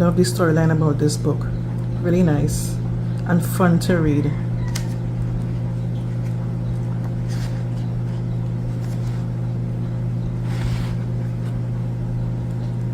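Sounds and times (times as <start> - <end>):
steady low hum: 0.0 - 12.9
faint rustles: 10.4 - 11.6.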